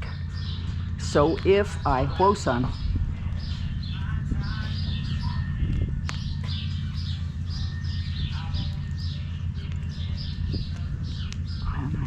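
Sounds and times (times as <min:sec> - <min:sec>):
small birds chirping: 0:00.0 - 0:12.0
wind buffeting microphone: 0:00.0 - 0:12.0.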